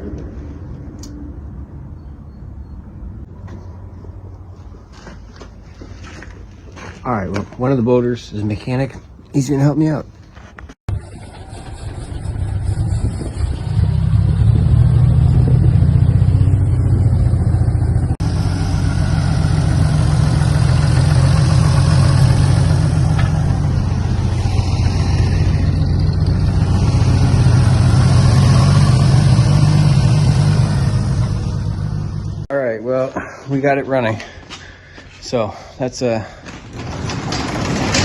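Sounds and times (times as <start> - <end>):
boat engine running: 10.9 - 32.4.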